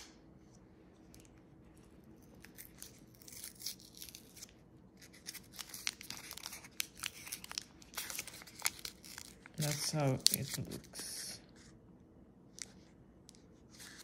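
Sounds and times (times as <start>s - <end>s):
paper wrapper crinkling and tearing: 1.2s - 11.4s.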